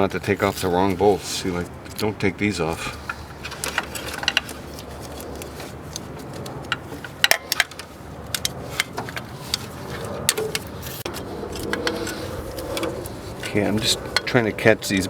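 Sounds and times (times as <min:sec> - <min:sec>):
tools and bolts clinking on metal: 0:02.9 - 0:14.4.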